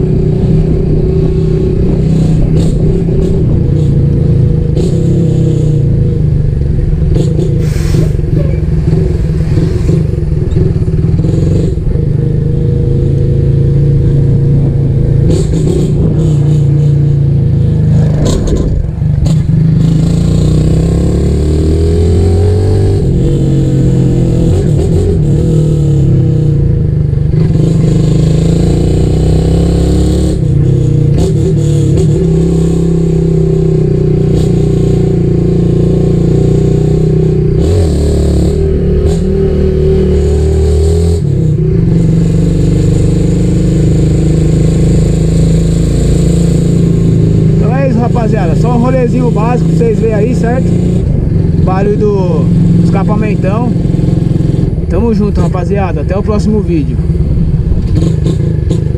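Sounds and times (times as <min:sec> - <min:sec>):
wind noise on microphone: 0:00.0 - 0:20.8, 0:50.5 - 0:58.9
motorcycle engine revving: 0:00.0 - 0:58.9.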